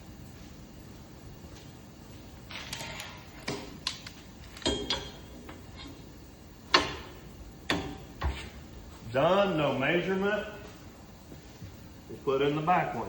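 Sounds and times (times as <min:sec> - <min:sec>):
metal clamps clicking and clanking: 0:02.5 - 0:05.3.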